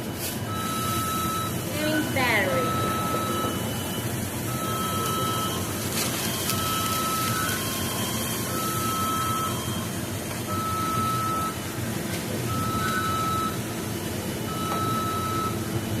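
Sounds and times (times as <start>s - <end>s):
kitchen hum: 0.0s - 16.0s
electronic alarm beeps: 0.5s - 11.7s, 12.4s - 13.7s, 14.5s - 16.0s
higher alarm tones: 0.5s - 11.8s, 12.4s - 13.9s.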